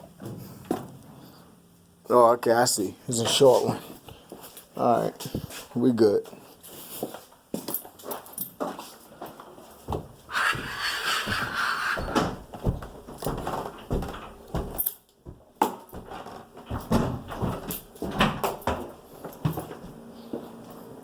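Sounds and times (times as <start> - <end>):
knocks and clatter of handling: 12.6 - 19.8.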